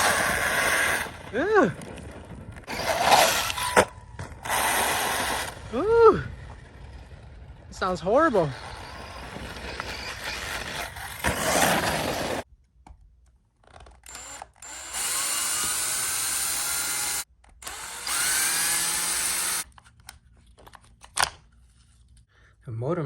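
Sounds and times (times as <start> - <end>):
toy truck motor grinding: 0.0 - 1.3, 2.6 - 5.7, 8.3 - 12.4, 13.8 - 19.7.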